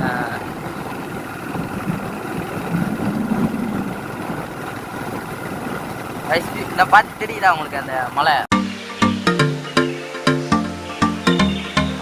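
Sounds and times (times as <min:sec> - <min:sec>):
motorcycle engine running: 0:00.0 - 0:07.3.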